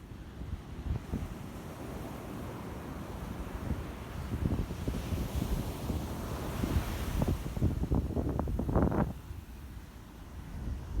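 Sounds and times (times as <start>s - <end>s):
wind on microphone: 3.7s - 9.4s.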